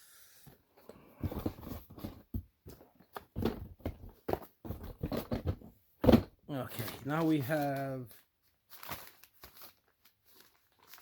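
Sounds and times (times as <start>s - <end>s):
items put into cardboard box: 0.5s - 7.8s.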